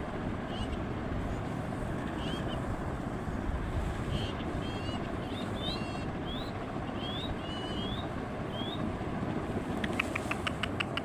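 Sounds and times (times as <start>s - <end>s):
steady rushing noise: 0.0s - 11.0s
sharp clicks: 9.8s - 11.0s.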